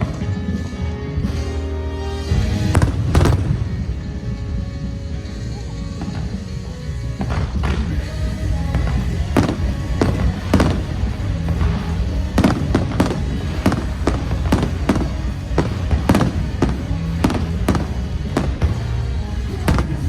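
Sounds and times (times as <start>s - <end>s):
music playing: 0.0s - 20.0s
fireworks bangs: 2.3s - 20.0s.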